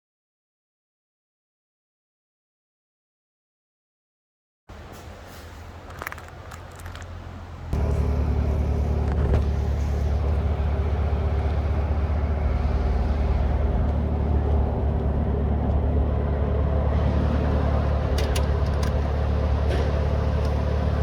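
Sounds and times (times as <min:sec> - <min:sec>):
motor low rumble: 0:04.7 - 0:21.0.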